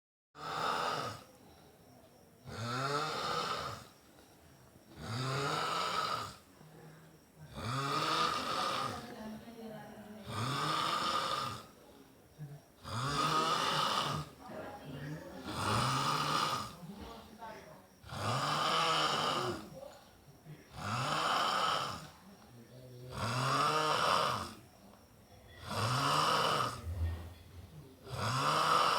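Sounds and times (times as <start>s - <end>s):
person snoring: 0.4s - 1.4s, 2.4s - 3.9s, 4.9s - 6.5s, 7.5s - 9.1s, 10.2s - 11.7s, 12.8s - 14.4s, 15.4s - 16.8s, 18.0s - 19.8s, 20.7s - 22.2s, 23.1s - 24.6s, 25.6s - 27.4s, 28.0s - 28.9s
quiet breaths: 0.4s - 28.9s.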